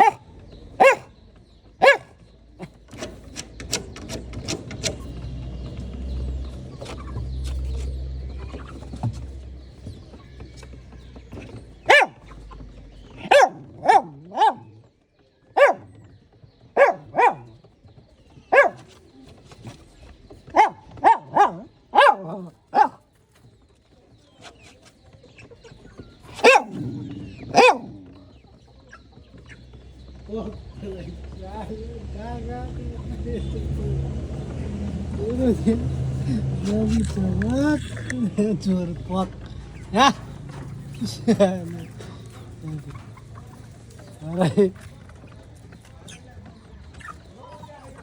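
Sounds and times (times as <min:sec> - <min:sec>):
dog barking: 0:00.0 - 0:01.2, 0:01.8 - 0:02.7, 0:11.8 - 0:12.4, 0:13.1 - 0:17.6, 0:18.4 - 0:19.0, 0:20.5 - 0:23.0, 0:26.3 - 0:28.2.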